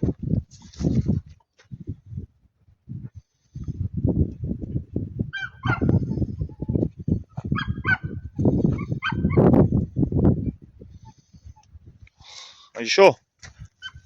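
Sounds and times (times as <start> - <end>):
rustling puffing sounds: 0.0 - 1.8.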